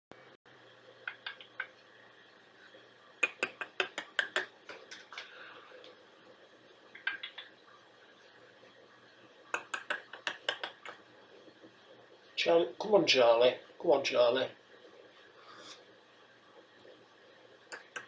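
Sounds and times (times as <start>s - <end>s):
sharp clicks and taps on hard surface: 1.1s - 1.8s, 3.2s - 5.3s, 9.6s - 11.0s.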